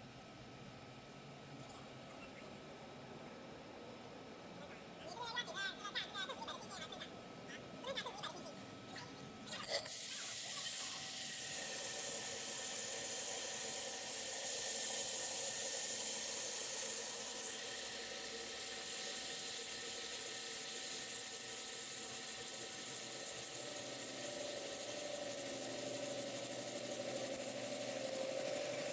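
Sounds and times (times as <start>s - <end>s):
drilling machine hiss: 9.7s - 28.9s
faint whining tones: 10.5s - 28.9s.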